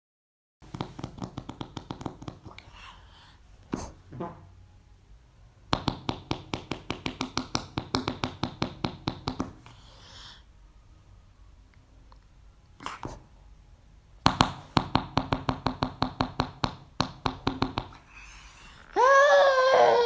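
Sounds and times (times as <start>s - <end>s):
hands making fart noises: 0.7s - 2.6s, 12.8s - 13.2s.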